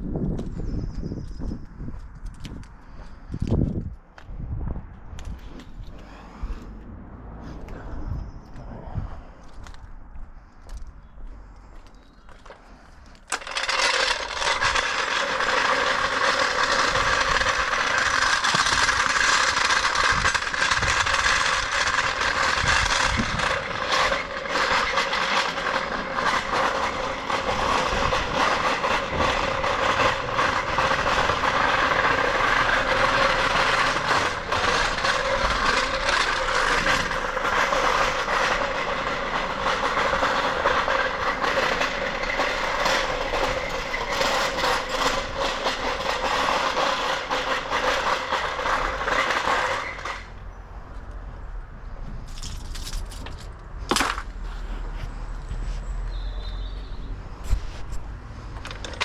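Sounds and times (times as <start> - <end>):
machine running loud: 13.3 - 50.4.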